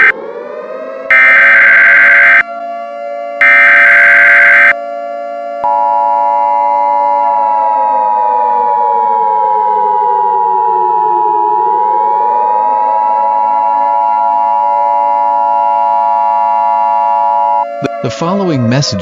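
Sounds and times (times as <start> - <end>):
siren falling and rising: 0.0 - 19.0
steady electronic alert tone: 1.1 - 2.4, 3.4 - 4.7.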